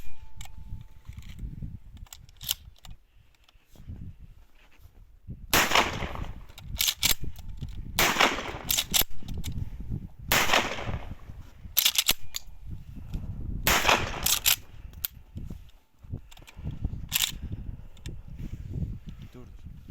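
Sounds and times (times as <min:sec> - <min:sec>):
shotgun firing: 0:05.5 - 0:06.5, 0:08.0 - 0:09.0, 0:10.3 - 0:11.2, 0:13.6 - 0:14.5.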